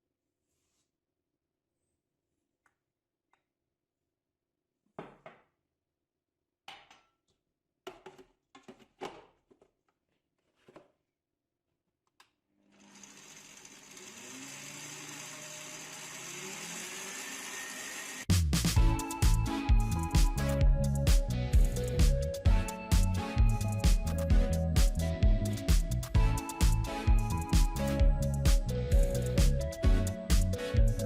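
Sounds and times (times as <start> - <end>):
kitchen appliance motor running: 12.6 - 18.3
loud music: 18.3 - 31.0.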